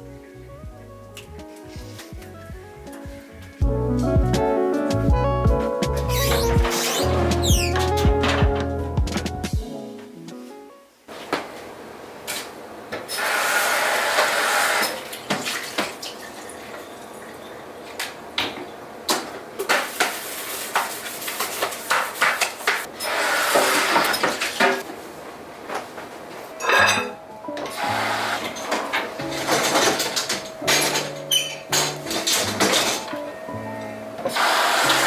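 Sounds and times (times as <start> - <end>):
dishes and cutlery clinking: 26.4 - 35.0.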